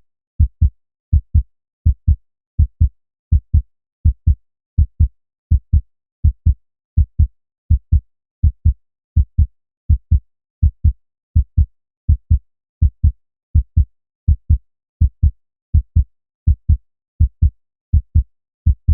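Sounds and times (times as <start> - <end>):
human heartbeat: 0.4 - 18.9.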